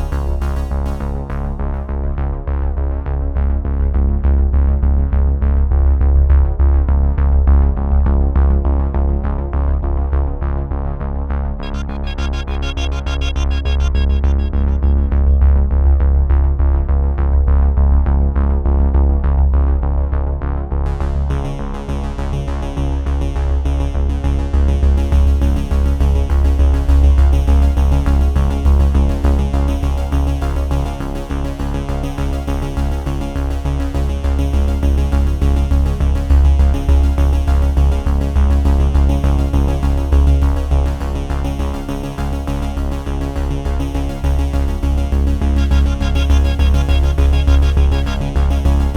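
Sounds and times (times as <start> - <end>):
electronic music with heavy bass: 0.0 - 1.6, 11.6 - 16.6, 35.6 - 48.9.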